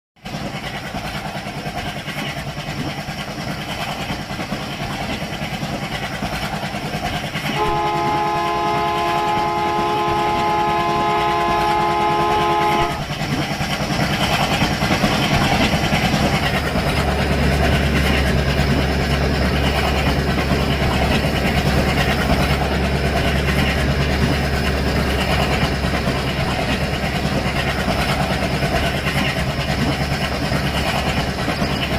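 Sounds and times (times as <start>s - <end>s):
low engine hum: 0.2s - 31.9s
train rumble and rattle: 0.2s - 31.9s
train horn blast: 7.6s - 13.1s.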